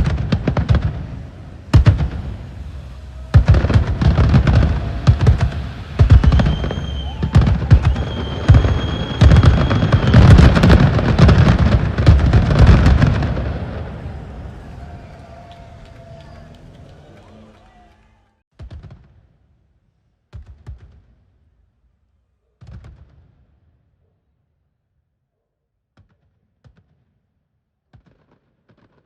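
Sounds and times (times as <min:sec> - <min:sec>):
fireworks booming and crackling: 0:00.0 - 0:17.4, 0:22.6 - 0:23.8, 0:27.9 - 0:29.0
long high whistle: 0:02.4 - 0:11.0, 0:14.0 - 0:17.6.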